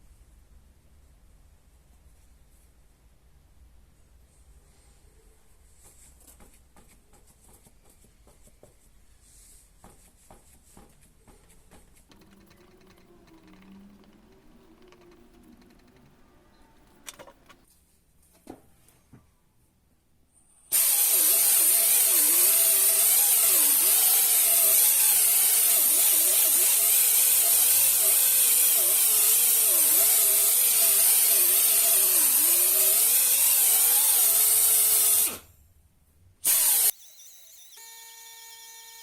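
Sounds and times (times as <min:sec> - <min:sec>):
power drill running: 0:20.7 - 0:35.5, 0:36.4 - 0:39.0.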